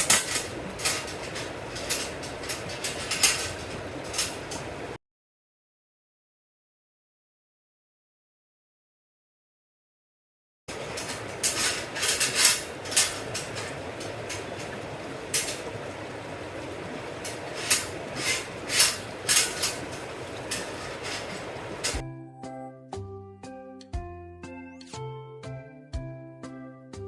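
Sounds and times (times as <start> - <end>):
wood fire crackling: 0.0 - 5.0, 10.7 - 22.0
music: 22.0 - 27.0.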